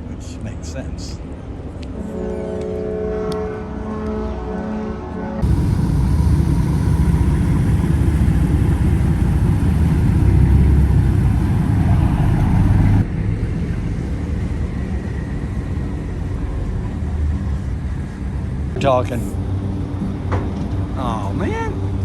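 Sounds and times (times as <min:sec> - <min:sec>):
vehicle engine rumbling: 0:05.4 - 0:13.1.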